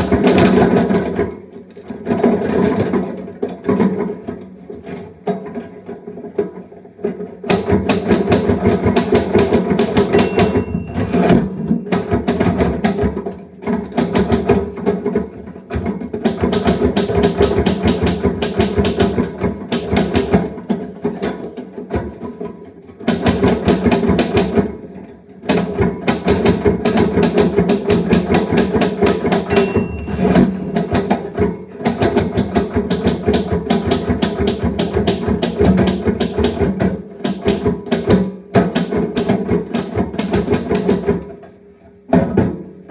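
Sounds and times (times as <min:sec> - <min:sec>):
typewriter bell ding: 0:10.1 - 0:11.9, 0:29.5 - 0:31.3.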